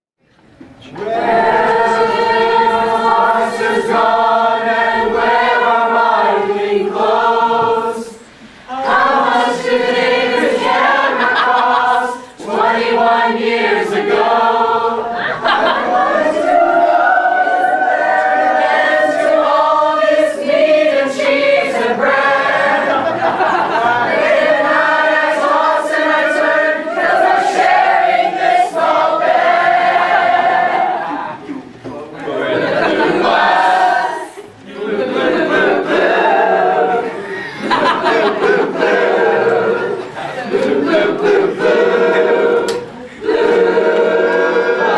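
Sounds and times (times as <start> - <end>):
choir singing a cappella: 0.8 - 44.9.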